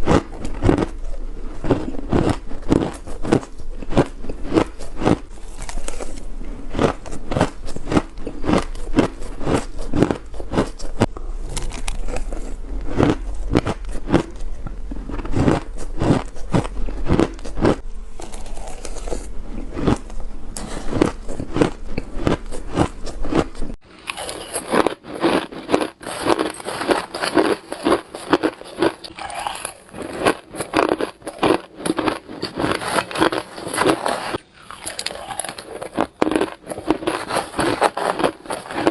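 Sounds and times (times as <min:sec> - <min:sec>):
low hum: 0:09.2 - 0:24.5
crushed ice crunching: 0:24.1 - 0:38.9.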